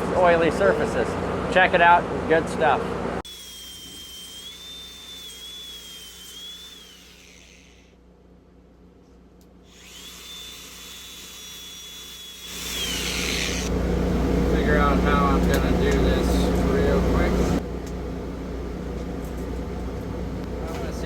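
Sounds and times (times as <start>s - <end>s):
grinder rushing on steel: 3.3s - 7.9s, 9.7s - 13.7s
power grinder whining: 3.3s - 7.9s, 9.7s - 13.7s.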